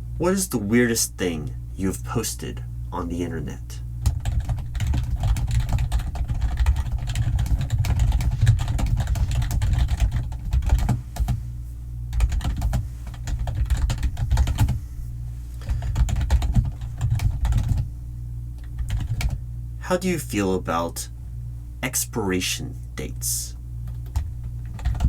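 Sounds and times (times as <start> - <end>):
steady low hum: 0.0 - 25.0
rapid typing on keyboard: 4.0 - 11.4, 12.1 - 14.8, 15.7 - 17.9, 18.7 - 19.4, 23.9 - 25.0.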